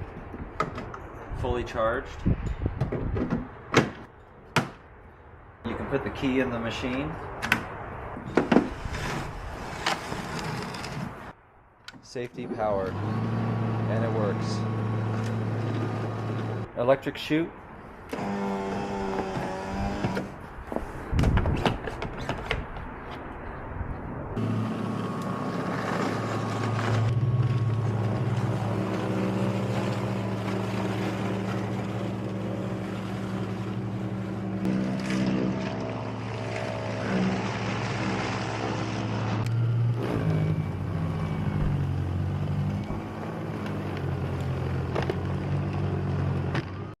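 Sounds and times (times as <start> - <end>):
electric snowblower motor humming: 24.4 - 44.8.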